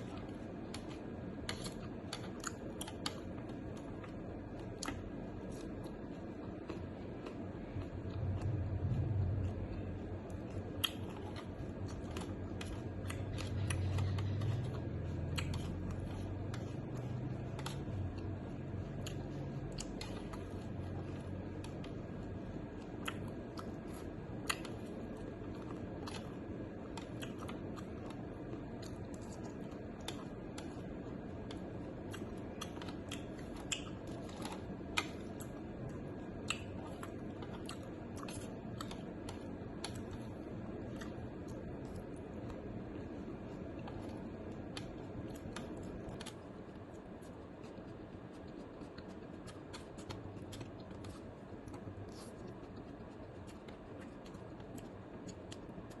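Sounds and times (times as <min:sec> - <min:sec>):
low rumble: 0:07.7 - 0:22.4.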